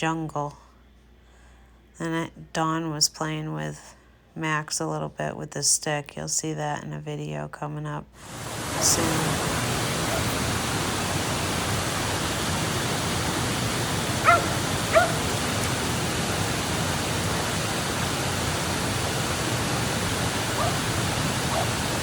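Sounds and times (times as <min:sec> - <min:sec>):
waterfall rushing: 0:08.2 - 0:22.0
dog barking: 0:09.9 - 0:10.5, 0:14.2 - 0:15.4, 0:20.5 - 0:20.9, 0:21.5 - 0:21.8.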